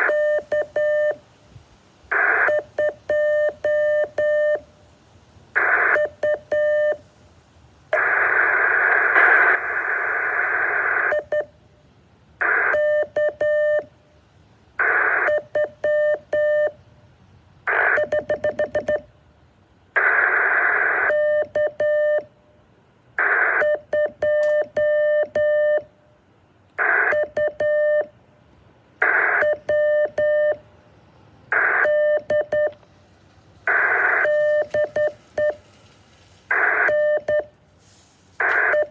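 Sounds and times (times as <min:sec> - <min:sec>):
buzzy morse code tone: 0:00.0 - 0:01.2, 0:02.1 - 0:04.7, 0:05.5 - 0:07.0, 0:07.9 - 0:11.6, 0:12.4 - 0:13.9, 0:14.8 - 0:16.8, 0:17.6 - 0:19.1, 0:20.0 - 0:22.3, 0:23.2 - 0:25.9, 0:26.8 - 0:28.1, 0:29.0 - 0:30.7, 0:31.5 - 0:32.8, 0:33.6 - 0:35.6, 0:36.5 - 0:37.5, 0:38.4 - 0:38.9
radio hiss: 0:00.0 - 0:11.6, 0:12.4 - 0:14.0, 0:14.6 - 0:16.8, 0:17.6 - 0:19.2, 0:19.8 - 0:22.2, 0:23.1 - 0:25.2, 0:26.8 - 0:27.6, 0:29.0 - 0:30.6, 0:31.4 - 0:35.8, 0:36.4 - 0:38.9.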